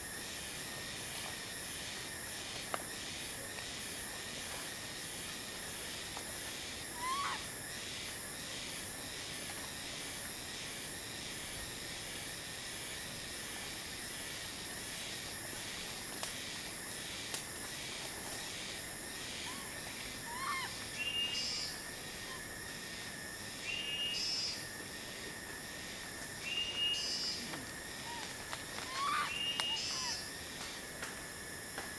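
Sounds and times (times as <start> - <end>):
pulsing insect drone: 0.0 - 31.9
flat high calls: 28.0 - 30.3
rising animal chirps: 28.8 - 30.3.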